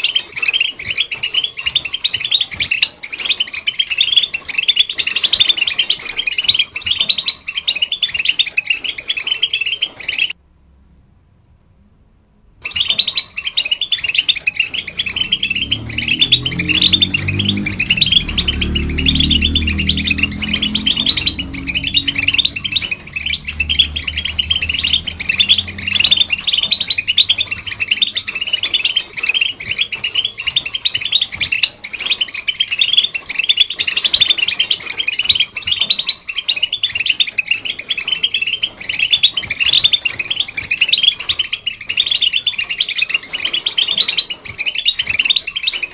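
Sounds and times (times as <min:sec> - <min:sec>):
bird twittering and trilling: 0:00.0 - 0:10.4, 0:12.6 - 0:45.9
low droning tone: 0:14.8 - 0:28.3.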